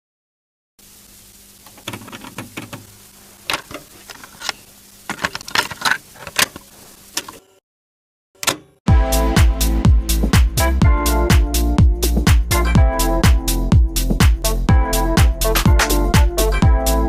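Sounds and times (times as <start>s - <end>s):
faint steady hum: 0.8s - 7.6s
irregular clicks and knocks: 1.7s - 2.9s.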